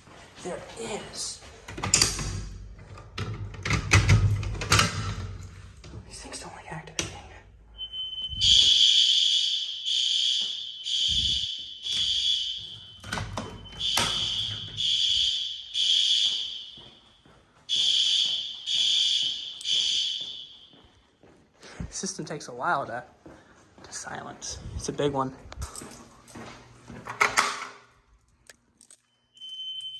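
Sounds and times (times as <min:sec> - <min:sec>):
fire alarm pulsing tone: 0:07.7 - 0:21.2, 0:28.9 - 0:29.9.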